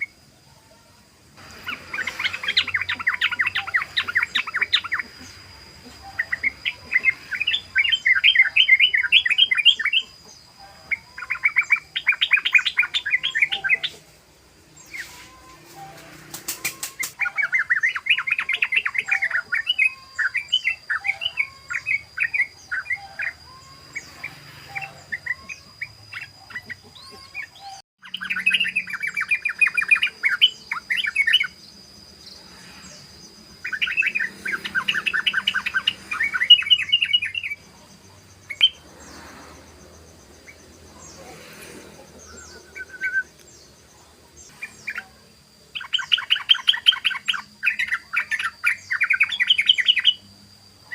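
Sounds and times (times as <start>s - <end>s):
bulbul rattling song: 1.4s - 50.9s.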